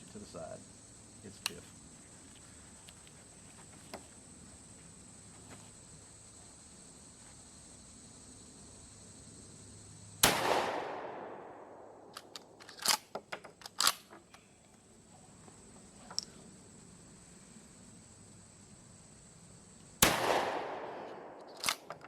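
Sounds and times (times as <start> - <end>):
shotgun shot: 10.2 - 12.2, 20.0 - 21.9.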